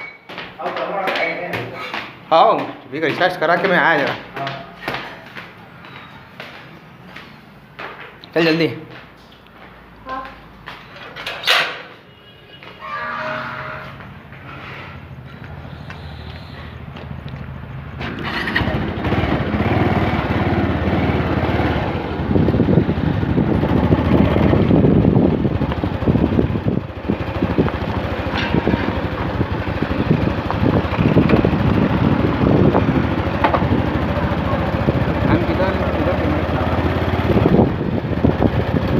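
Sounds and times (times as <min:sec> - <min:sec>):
small motorbike engine running: 0:18.0 - 0:38.9
wind noise on microphone: 0:18.8 - 0:35.6, 0:37.0 - 0:38.9.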